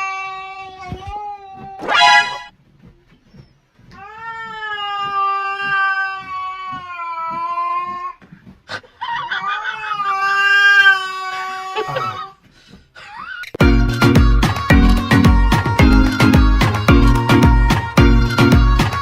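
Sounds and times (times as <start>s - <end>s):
cat yowling: 9.1s - 12.3s.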